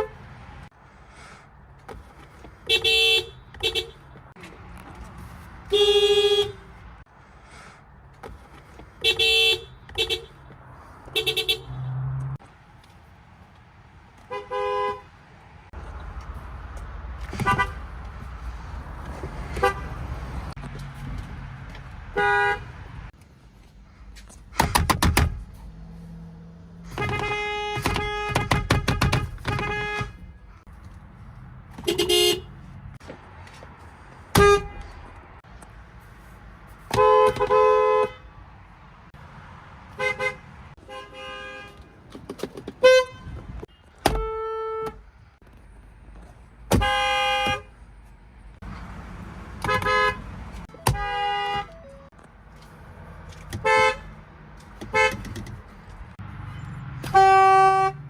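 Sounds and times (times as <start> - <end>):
car horns beeping: 0.0 - 0.4, 2.6 - 4.4, 5.6 - 7.0, 9.0 - 12.4, 14.2 - 15.2, 17.2 - 18.0, 19.4 - 20.2, 22.0 - 23.0, 26.8 - 30.4, 31.7 - 32.6, 34.3 - 35.1, 36.9 - 38.4, 39.9 - 45.0, 46.7 - 47.8, 49.6 - 52.2, 53.4 - 58.0.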